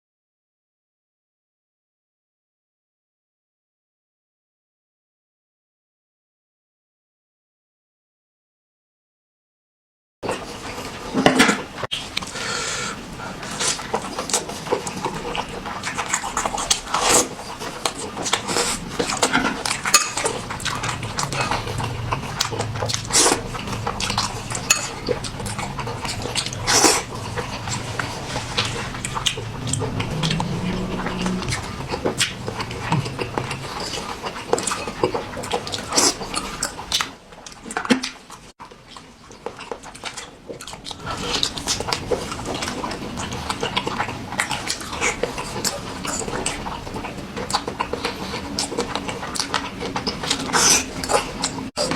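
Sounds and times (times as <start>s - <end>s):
noodles slurped and chewed: 12.2s - 38.2s, 38.9s - 51.9s.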